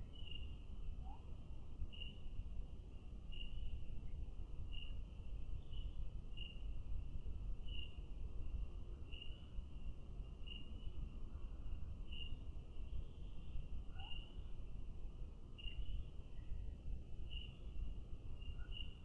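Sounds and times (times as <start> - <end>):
cricket chirping: 0.1 - 1.2, 1.9 - 2.3, 3.0 - 3.7, 4.7 - 6.6, 10.3 - 11.5, 12.1 - 14.5, 15.5 - 16.1, 17.2 - 17.8, 18.4 - 19.0.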